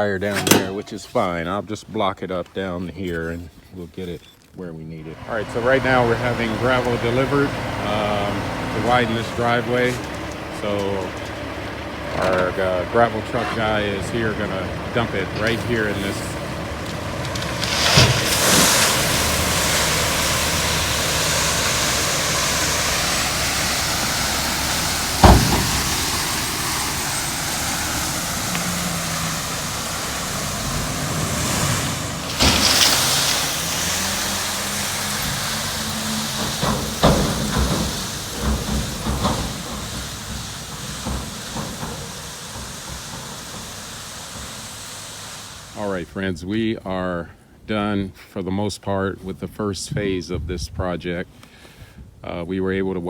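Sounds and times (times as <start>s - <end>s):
gravel rushing from dump truck: 0.0s - 53.0s
truck engine running: 4.0s - 46.3s
loud knocks: 15.4s - 31.7s, 32.3s - 45.6s.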